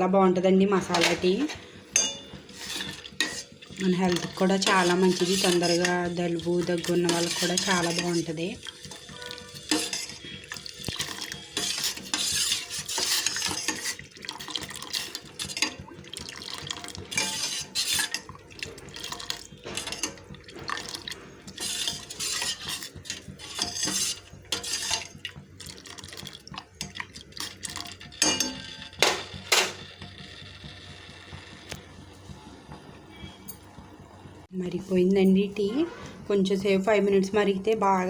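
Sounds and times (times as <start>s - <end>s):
tea boiling: 0.0s - 38.0s
metal spoon scraping a pan: 0.9s - 15.8s, 17.1s - 18.4s, 19.6s - 25.2s.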